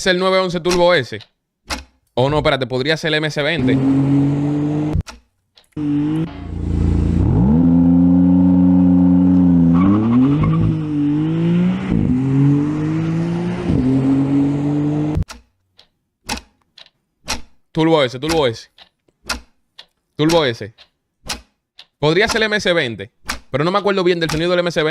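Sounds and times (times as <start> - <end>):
car engine accelerating hard: 3.6 - 5.0, 5.8 - 15.2.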